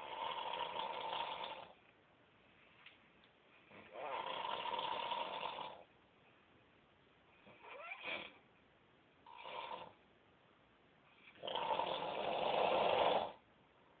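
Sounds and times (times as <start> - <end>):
man snoring: 0.0 - 1.8, 3.8 - 5.8, 11.4 - 13.4.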